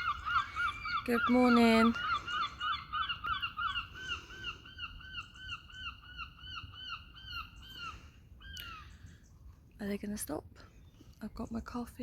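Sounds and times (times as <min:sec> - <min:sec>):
bird calling repeated notes: 0:00.0 - 0:09.0.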